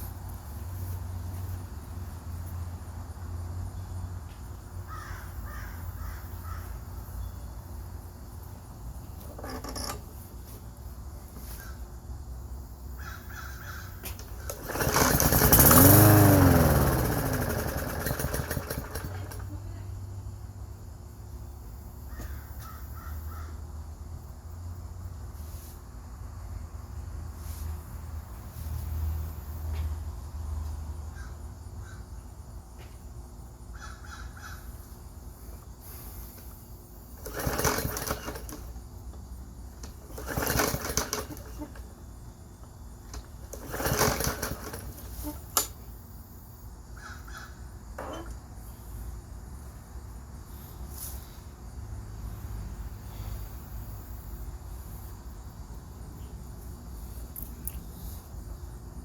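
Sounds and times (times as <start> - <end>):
recoil starter cranking engine: 9.1 - 10.2, 13.7 - 19.6, 35.7 - 46.0, 47.0 - 49.0.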